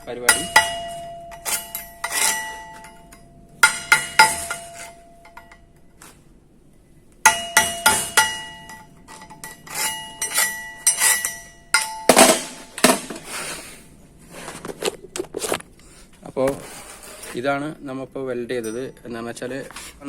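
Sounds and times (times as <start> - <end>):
hammer striking steel plate: 0.0 - 5.7, 7.2 - 13.2.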